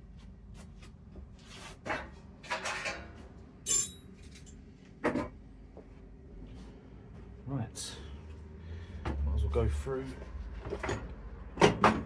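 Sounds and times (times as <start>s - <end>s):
metal tools clinking: 3.7s - 4.1s.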